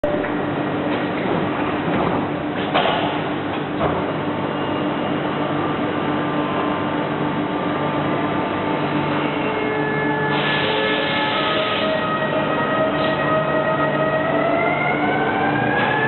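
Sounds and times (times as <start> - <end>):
electric train humming: 5.8 - 16.0.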